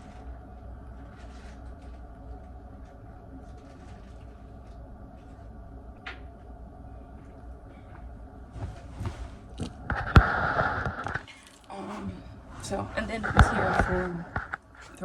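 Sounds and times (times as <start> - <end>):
low room hum: 0.0 - 15.0
soft knocks and rustles: 8.6 - 9.7.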